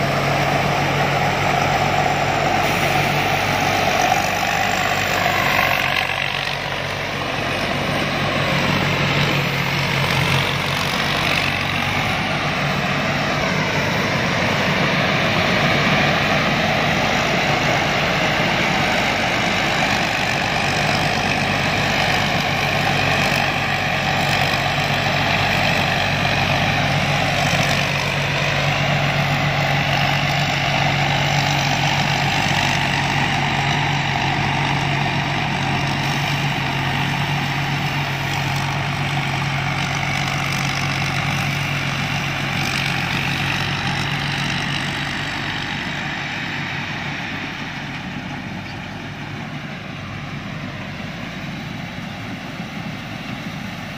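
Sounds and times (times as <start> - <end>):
combine harvester humming: 0.0 - 53.9.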